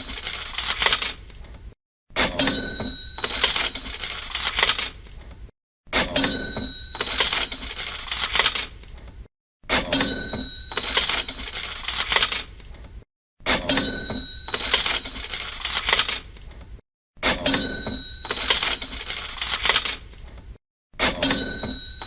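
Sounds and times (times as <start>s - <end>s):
coins jingling: 0.0s - 1.3s, 3.0s - 5.1s, 6.9s - 8.8s, 10.7s - 12.5s, 14.4s - 16.4s, 18.2s - 20.1s
cash register bell ding: 2.2s - 4.8s, 6.0s - 8.1s, 9.7s - 12.2s, 13.5s - 16.0s, 17.2s - 19.8s, 21.1s - 22.0s.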